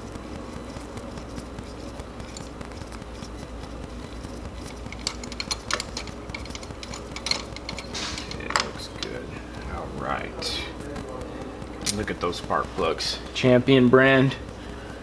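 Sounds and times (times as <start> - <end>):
steady low hum: 0.0 - 15.0
metallic clicks of tools: 4.6 - 9.1.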